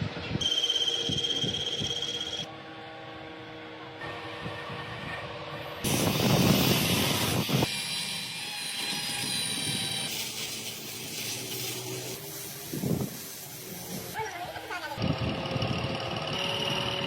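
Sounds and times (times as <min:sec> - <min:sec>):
workshop machinery running: 0:00.0 - 0:17.0
high-pitched whining tones: 0:00.3 - 0:11.0, 0:14.5 - 0:17.0.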